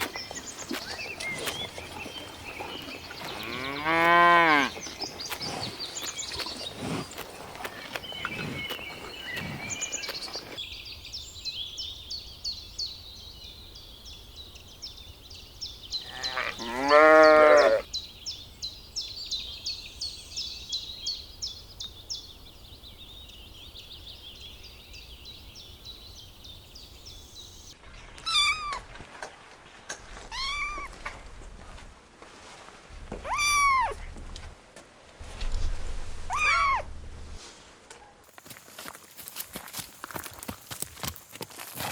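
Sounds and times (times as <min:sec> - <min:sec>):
loud wavering bleat: 0:16.1 - 0:17.8
cat meows: 0:33.2 - 0:34.0.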